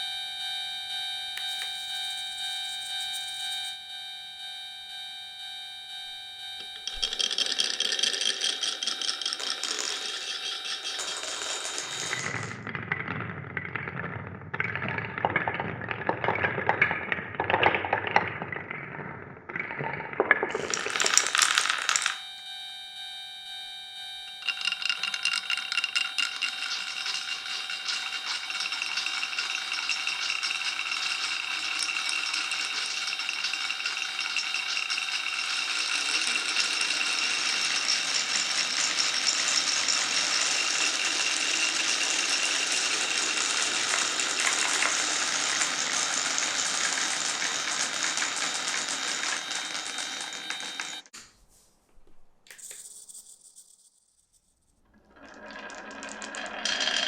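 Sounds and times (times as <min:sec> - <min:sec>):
electronic crossing bell dinging: 0:00.0 - 0:12.6, 0:20.6 - 0:47.0, 0:47.6 - 0:51.1
marbles rolling down tracks: 0:06.8 - 0:22.2, 0:24.4 - 0:51.0, 0:52.5 - 0:57.0.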